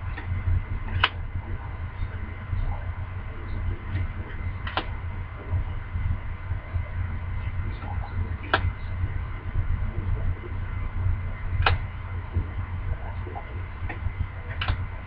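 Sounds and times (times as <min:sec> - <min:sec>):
low hum: 0:00.0 - 0:15.0
trading cards clicking: 0:04.6 - 0:04.9.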